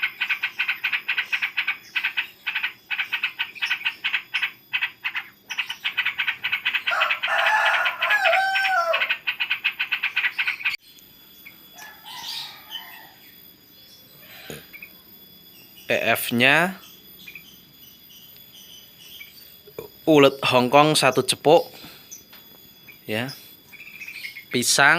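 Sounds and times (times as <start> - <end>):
bird chattering call: 0.0 - 24.9
bird warbling phrase: 15.9 - 16.8.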